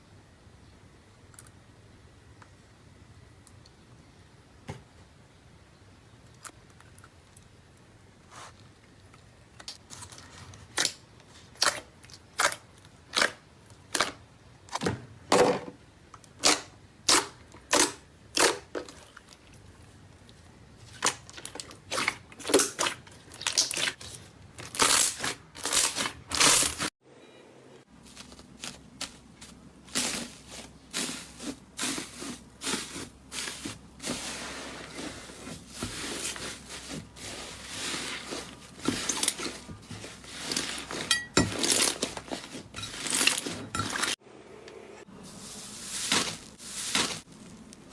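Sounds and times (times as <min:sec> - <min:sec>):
slime popping and crackling: 0:20.9 - 0:26.8.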